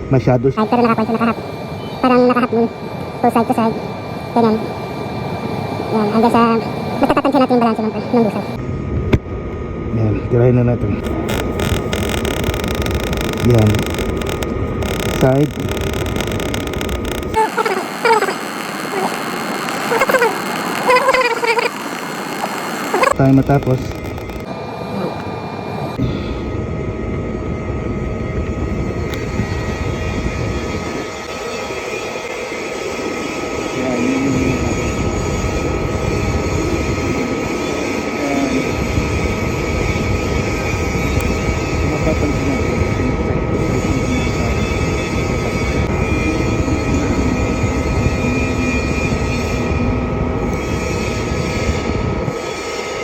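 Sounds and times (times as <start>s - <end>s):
welding arc crackling: 11.0s - 25.3s.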